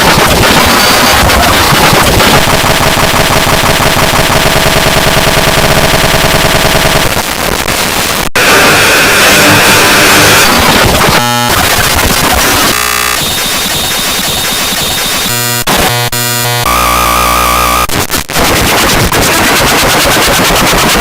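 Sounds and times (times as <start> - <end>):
loud rapid rattling: 0.0 - 7.1, 18.4 - 21.0.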